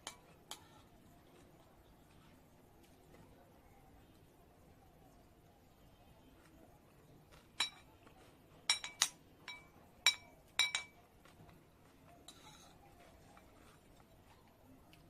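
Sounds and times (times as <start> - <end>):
cutlery clinking against a dish: 0.0 - 1.5, 7.3 - 14.4.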